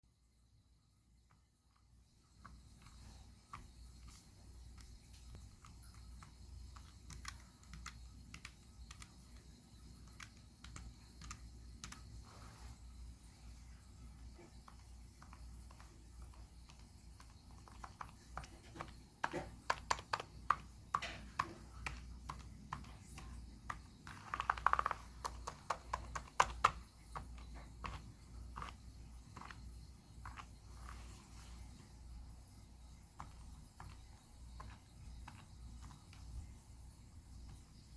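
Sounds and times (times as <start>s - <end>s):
keyboard keys clicking: 2.4s - 12.2s, 14.3s - 31.1s, 32.8s - 36.6s.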